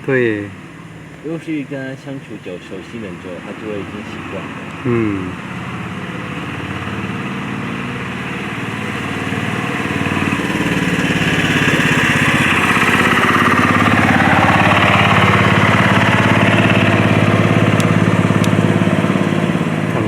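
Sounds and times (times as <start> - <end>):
small engine running: 0.1 - 20.0.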